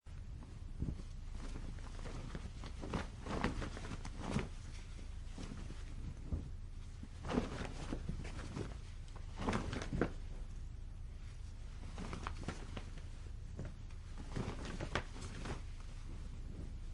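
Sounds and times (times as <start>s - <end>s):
cloth flapping in wind: 0.1s - 16.9s.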